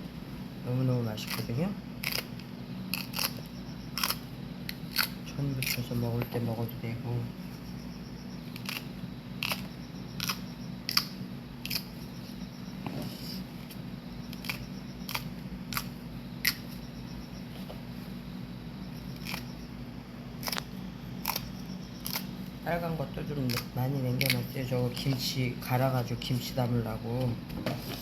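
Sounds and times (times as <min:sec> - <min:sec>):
knife cutting peppers: 0:01.2 - 0:06.5, 0:08.5 - 0:11.9, 0:14.3 - 0:16.7, 0:19.2 - 0:19.5, 0:20.4 - 0:22.3, 0:23.3 - 0:25.2.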